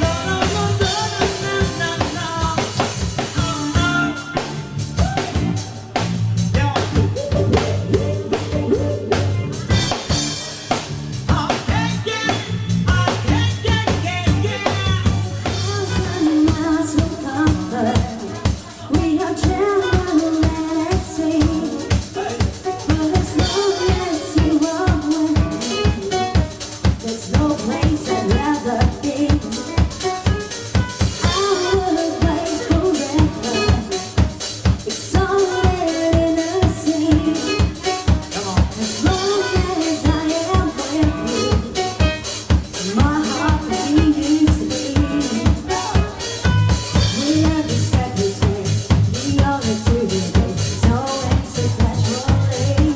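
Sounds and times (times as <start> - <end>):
low bass: 2.9 - 18.2, 38.3 - 52.9
dance music: 6.6 - 12.3, 37.8 - 48.3.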